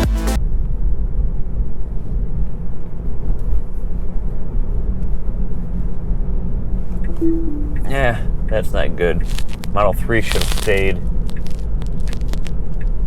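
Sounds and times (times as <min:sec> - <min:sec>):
road and tyre rumble: 0:00.4 - 0:07.0, 0:08.5 - 0:13.0.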